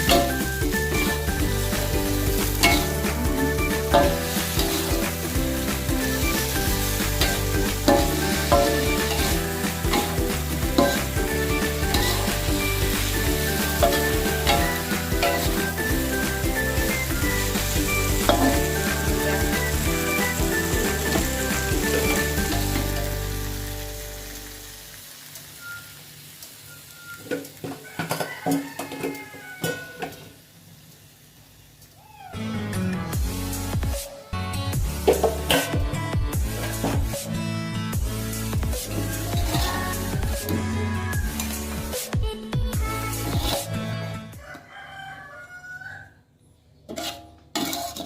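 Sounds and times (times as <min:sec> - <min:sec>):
food sizzling in hot oil: 0:00.0 - 0:31.8, 0:38.0 - 0:41.9
spatula scraping and knocking pan: 0:02.3 - 0:19.8, 0:39.3 - 0:40.6, 0:46.9 - 0:48.0.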